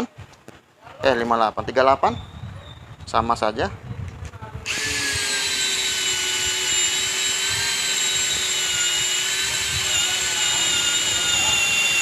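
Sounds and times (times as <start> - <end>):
electric drill whining: 4.7 - 12.0.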